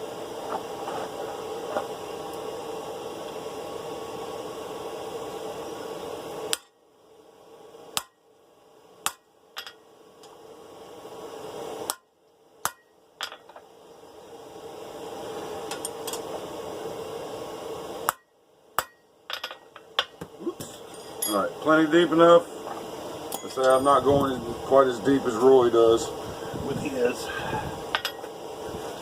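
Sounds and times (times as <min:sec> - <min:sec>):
hammer striking steel on anvil: 0:08.0 - 0:08.2, 0:09.0 - 0:09.8, 0:11.9 - 0:13.4, 0:18.1 - 0:20.1
steady rushing noise: 0:23.8 - 0:29.0.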